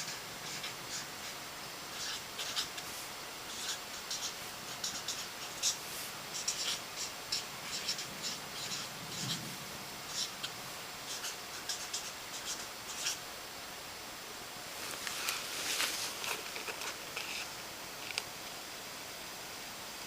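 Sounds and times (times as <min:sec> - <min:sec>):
pen scratching on paper: 0:00.0 - 0:09.4.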